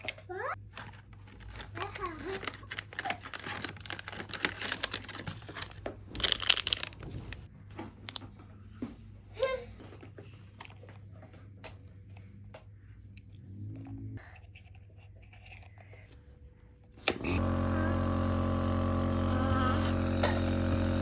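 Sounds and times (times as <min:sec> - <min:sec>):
electric motor humming: 0:17.0 - 0:21.0.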